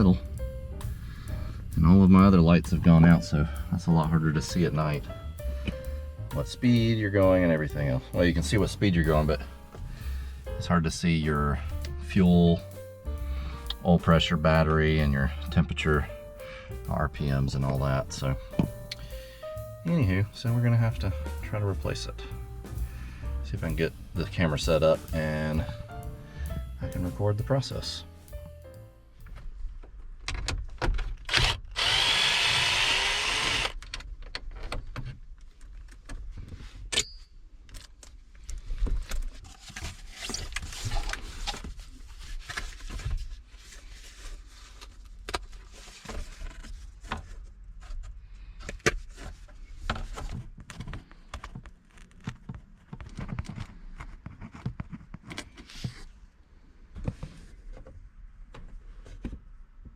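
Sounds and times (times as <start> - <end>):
cordless drill running: 31.3 - 33.8.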